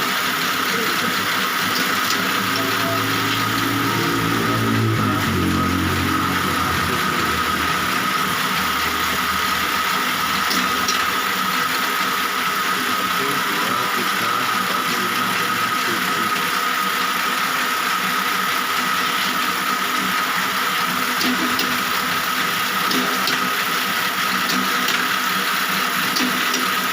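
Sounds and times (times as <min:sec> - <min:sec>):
electric motor whining: 0:00.0 - 0:26.7.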